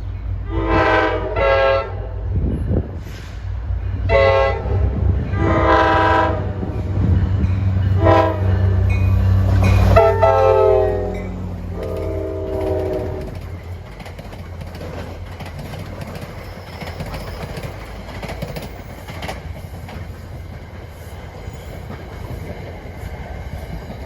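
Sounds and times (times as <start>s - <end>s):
diesel train rumble: 0.0s - 24.0s
train horn chord: 0.5s - 2.3s, 4.1s - 6.8s, 7.9s - 9.2s, 9.8s - 13.5s
wheels clicking over rail joints: 6.5s - 24.0s.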